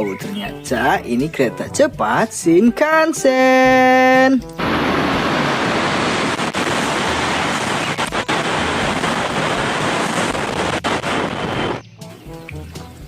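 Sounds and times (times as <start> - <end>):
spraying water hiss: 4.5 - 11.8.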